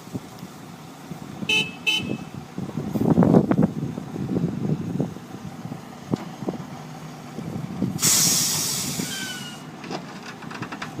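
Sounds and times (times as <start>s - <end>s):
heavy machinery rumbling: 0.1s - 11.0s
loud hiss: 8.0s - 9.7s.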